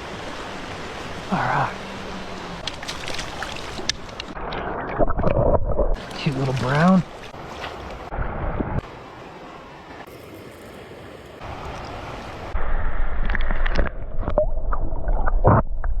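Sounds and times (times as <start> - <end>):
creek water rushing: 0.0 - 4.4, 6.0 - 8.1, 8.8 - 12.6.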